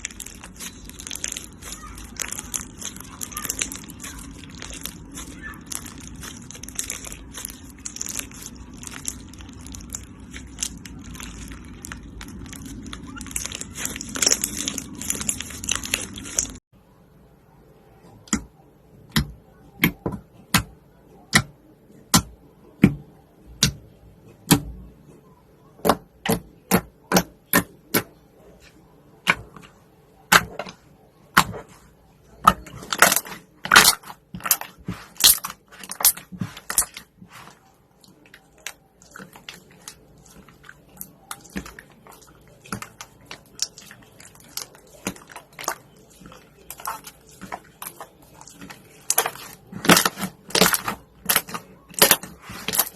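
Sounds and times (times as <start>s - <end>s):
slime popping and crackling: 0.0s - 16.6s, 32.3s - 52.9s.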